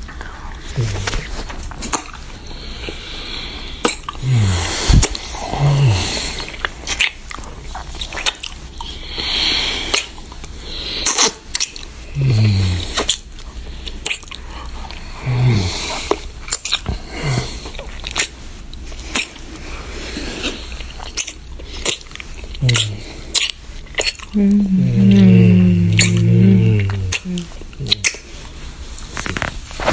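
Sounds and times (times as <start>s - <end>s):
wet kissing smacks: 3.8s - 4.2s, 9.9s - 10.2s, 11.0s - 11.8s, 13.0s - 13.2s, 19.1s - 19.4s, 21.2s - 24.3s, 27.1s - 28.2s
low hums dropping in pitch: 24.4s - 28.2s.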